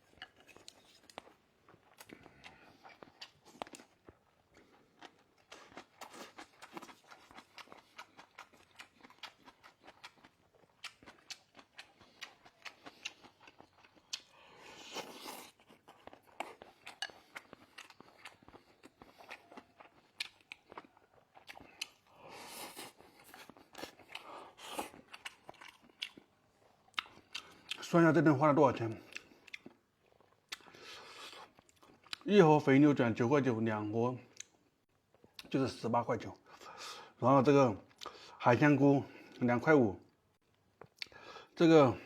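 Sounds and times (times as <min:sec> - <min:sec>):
wet chewing and biting: 0:00.4 - 0:22.0.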